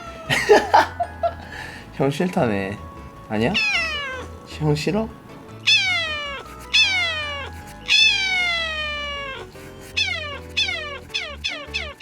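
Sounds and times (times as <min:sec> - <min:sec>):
cat meowing: 0:00.0 - 0:00.5, 0:03.5 - 0:04.5, 0:05.5 - 0:12.0.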